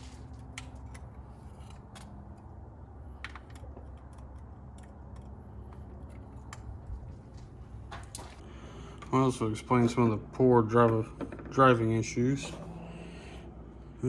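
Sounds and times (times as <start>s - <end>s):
steady low hum: 0.0s - 14.0s
light clicks and taps of tools: 3.1s - 8.4s.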